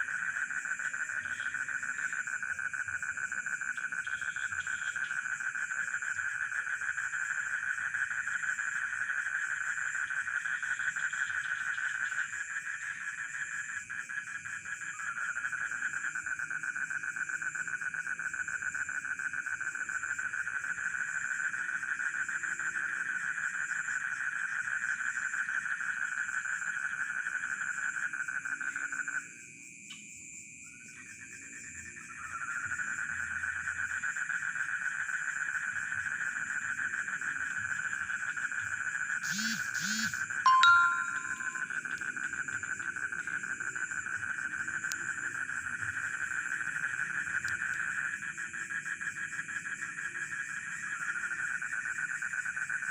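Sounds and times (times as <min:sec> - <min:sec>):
pulsing trill of frogs: 0:00.0 - 0:52.9
low frog croaks: 0:32.1 - 0:52.9
high even chirping: 0:39.2 - 0:41.7.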